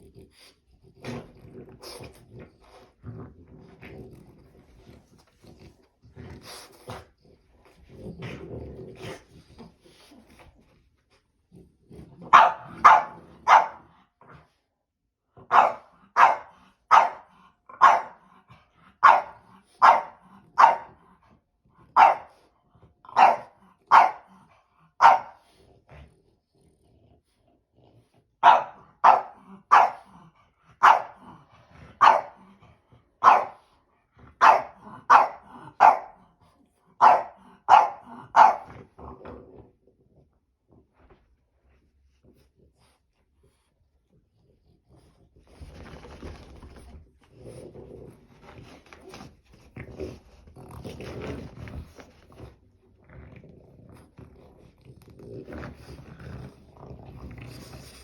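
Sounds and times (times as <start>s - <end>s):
dog low grumble: 0.0s - 10.4s, 47.1s - 58.0s
dog barking: 12.3s - 13.9s, 15.5s - 18.2s, 19.0s - 21.0s, 22.0s - 22.4s, 23.1s - 24.3s, 25.0s - 25.4s, 28.4s - 30.1s, 30.8s - 31.2s, 32.0s - 32.4s, 33.2s - 33.6s, 34.4s - 36.2s, 37.0s - 38.7s.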